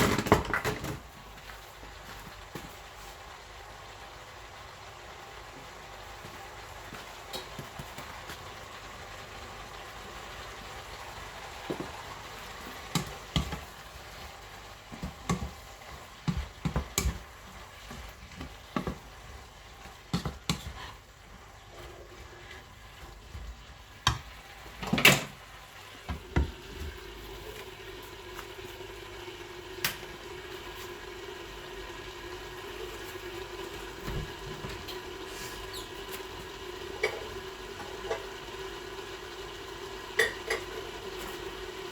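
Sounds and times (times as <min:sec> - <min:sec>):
food sizzling in a pan: 0:00.0 - 0:41.9
spatula knocking and scraping pan: 0:12.8 - 0:13.8, 0:14.9 - 0:25.1, 0:26.1 - 0:27.0.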